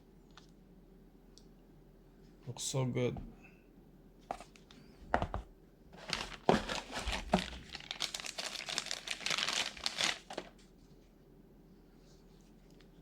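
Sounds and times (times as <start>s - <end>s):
plastic packaging crinkling: 6.0s - 10.6s.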